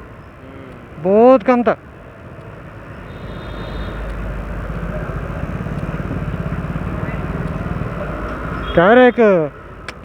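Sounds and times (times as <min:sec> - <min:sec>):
road and wind noise: 0:00.0 - 0:10.0
motorbike engine running: 0:02.9 - 0:09.0.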